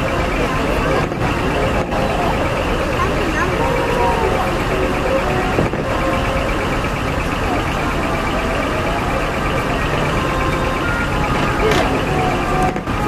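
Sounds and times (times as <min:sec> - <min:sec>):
busy din: 0:00.0 - 0:13.0
heavy truck engines idling: 0:00.0 - 0:13.0.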